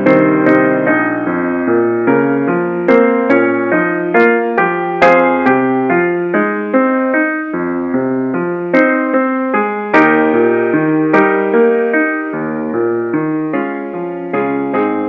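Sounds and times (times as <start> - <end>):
slow piano broken chords: 0.0 - 15.0.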